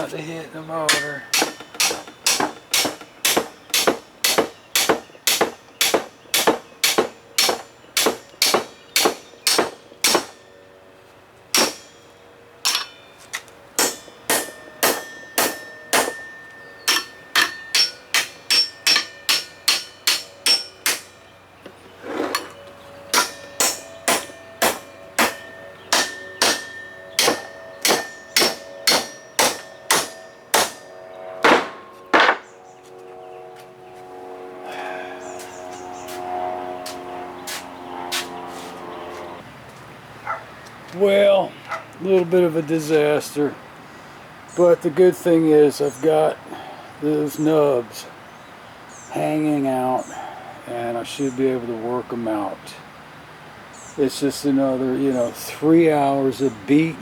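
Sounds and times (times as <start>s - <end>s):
hammer striking metal: 0.8s - 10.4s, 11.5s - 13.0s, 13.8s - 21.2s, 23.1s - 32.5s.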